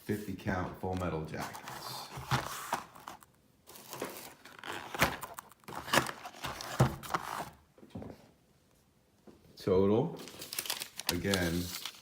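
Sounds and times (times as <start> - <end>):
cardboard and paper rustling: 0.0 - 7.6, 10.2 - 12.0.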